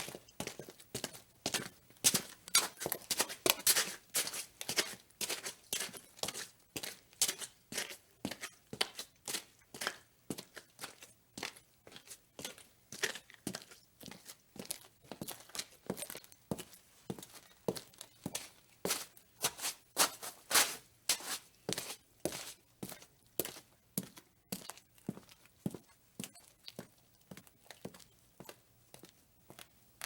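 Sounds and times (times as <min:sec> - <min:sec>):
footsteps crisp scuffs: 0:00.0 - 0:09.0, 0:15.5 - 0:23.6.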